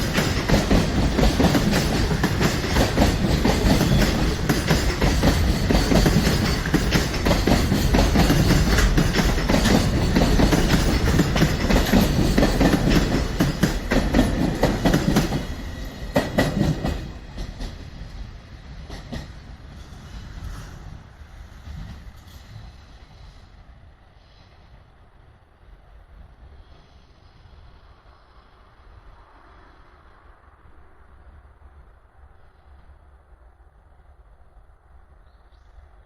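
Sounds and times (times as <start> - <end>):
train wheels clicking over rail joints: 0.0 - 23.2.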